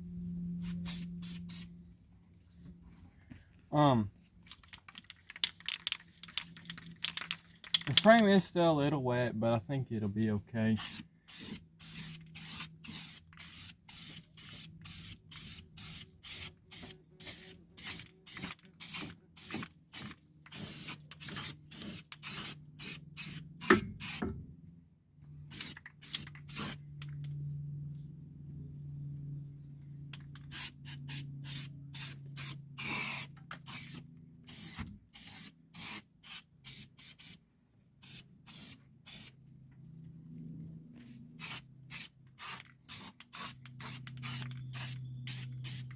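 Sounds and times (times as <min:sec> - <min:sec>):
steady low hum: 0:00.0 - 0:04.5, 0:26.3 - 0:33.4
aerosol spray hisses: 0:00.6 - 0:01.7, 0:10.8 - 0:24.3, 0:25.5 - 0:26.8, 0:38.0 - 0:39.3, 0:41.4 - 0:45.9.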